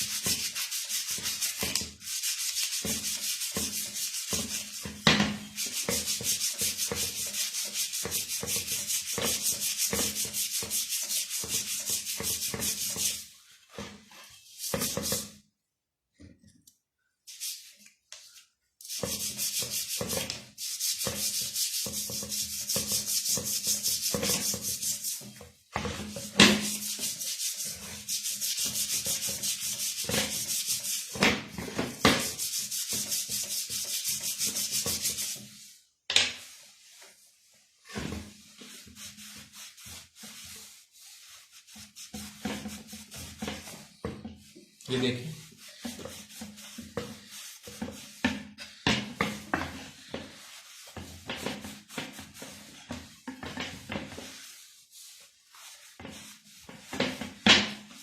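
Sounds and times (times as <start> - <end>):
hand scrubbing metal hub: 0.0 - 4.9, 5.5 - 13.3, 18.8 - 31.2, 32.2 - 35.7, 44.5 - 57.3.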